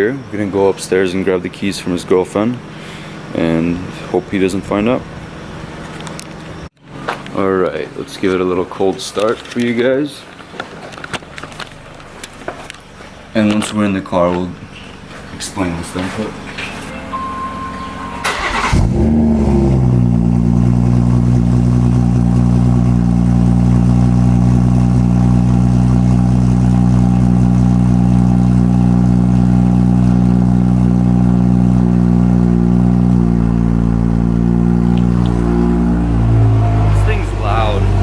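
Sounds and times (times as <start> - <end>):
car engine cold start and idle: 14.6 - 38.0.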